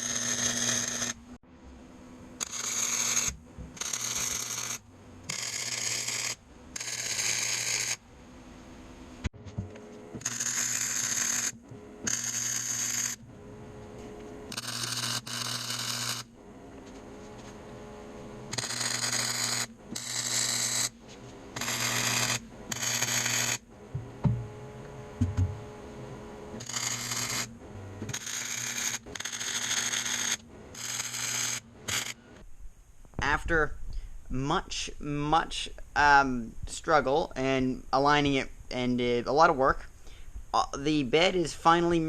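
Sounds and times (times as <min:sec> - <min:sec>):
welder humming: 0:00.0 - 0:32.5
welding crackling hiss: 0:02.4 - 0:08.0
dull knocks: 0:24.0 - 0:24.5, 0:25.2 - 0:25.6.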